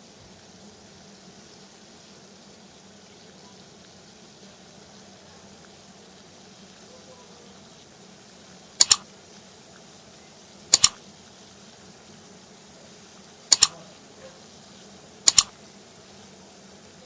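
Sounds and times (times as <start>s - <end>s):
boiling water hiss: 0.0s - 17.0s
sharp double clicks: 8.8s - 9.0s, 10.7s - 11.0s, 13.5s - 13.8s, 15.3s - 15.5s.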